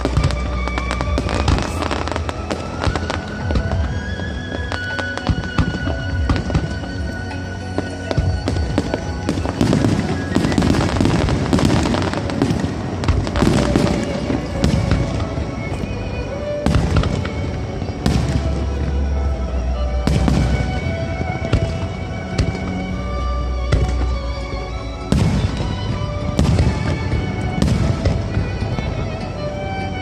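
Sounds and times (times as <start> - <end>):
sharp fireworks bangs: 0.0 - 7.2, 7.8 - 18.7, 25.1 - 29.4
fireworks crackling and popping: 0.0 - 30.0
music: 0.0 - 30.0.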